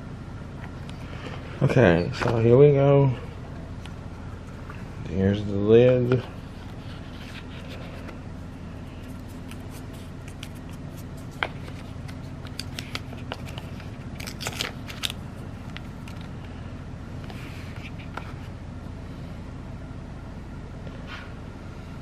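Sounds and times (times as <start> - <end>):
steady low hum: 0.0 - 22.0
cardboard box packaging rustling: 6.2 - 16.3.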